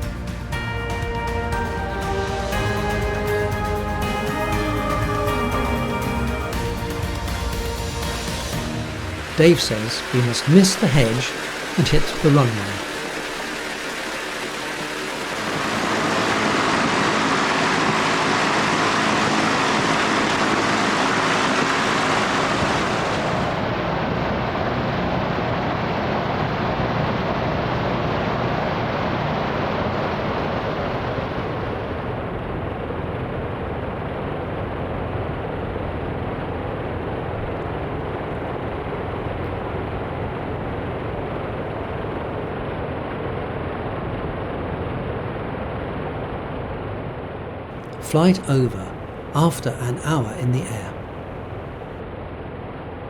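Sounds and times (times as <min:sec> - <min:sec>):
microlight engine running: 0:00.0 - 0:32.0.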